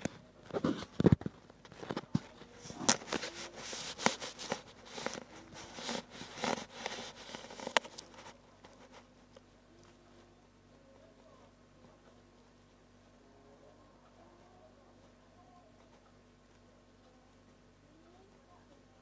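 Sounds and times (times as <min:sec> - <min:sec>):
drawing tool scratching paper: 0:02.6 - 0:09.1.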